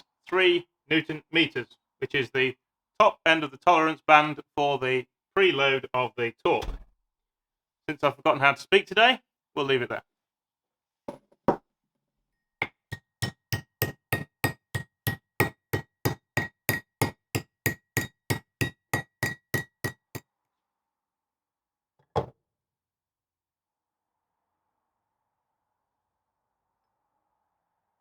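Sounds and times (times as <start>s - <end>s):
hammer striking metal: 12.6s - 20.2s.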